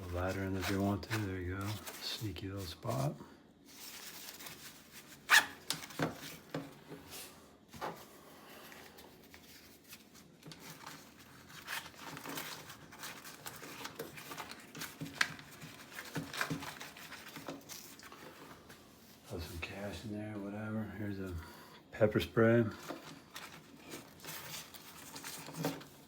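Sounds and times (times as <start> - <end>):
fabric pouch rustling and scraping: 0.0 - 19.4, 22.8 - 26.0.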